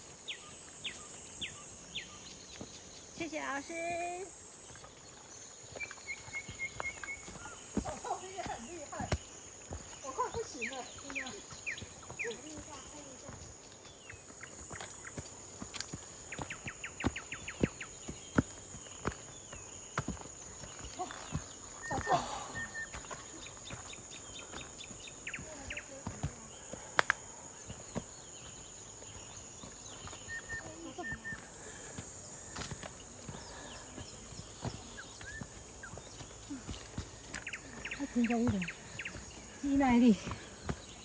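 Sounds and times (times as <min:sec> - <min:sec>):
bird chirps: 0:00.0 - 0:31.8, 0:33.3 - 0:41.0
footsteps on forest trail: 0:00.0 - 0:41.0
ticking bird calls: 0:04.7 - 0:31.6.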